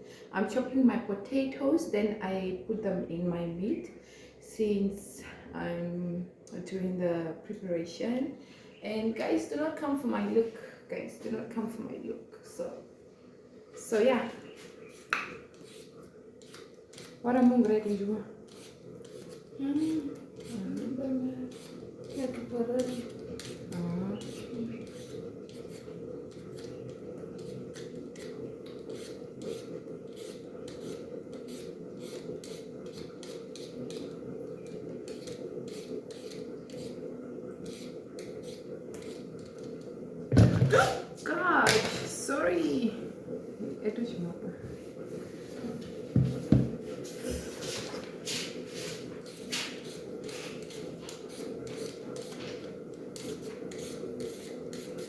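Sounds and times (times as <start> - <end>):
steady low hum: 0.0 - 55.0
knife peeling potatoes: 14.4 - 39.9, 47.6 - 55.0.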